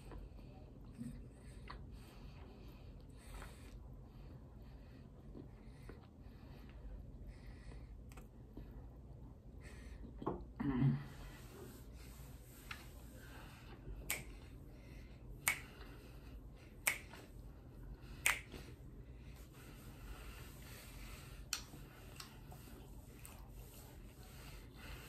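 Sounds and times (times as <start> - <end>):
person chewing: 1.6 - 1.9.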